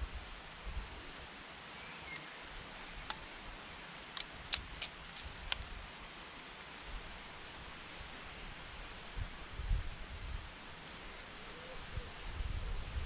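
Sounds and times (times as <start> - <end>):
steady quiet hiss: 0.0 - 13.0
low wind rumble: 6.9 - 13.0.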